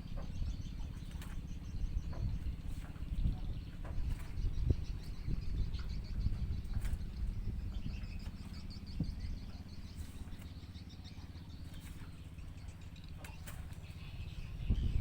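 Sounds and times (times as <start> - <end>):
birds chirping: 0.0 - 15.0
low mechanical hum: 0.0 - 15.0.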